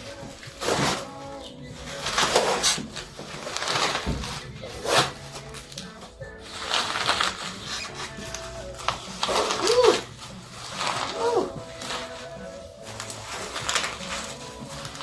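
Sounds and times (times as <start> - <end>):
background music: 0.0 - 15.0
bubble wrap crinkling: 0.0 - 15.0.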